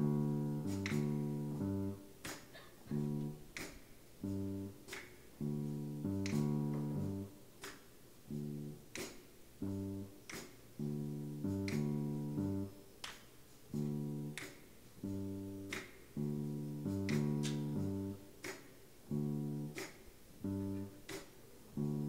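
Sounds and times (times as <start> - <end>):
repeating short instrumental chords: 4.2 - 7.3, 8.2 - 9.0, 9.6 - 12.8, 13.7 - 18.4, 19.0 - 21.2, 21.8 - 22.0.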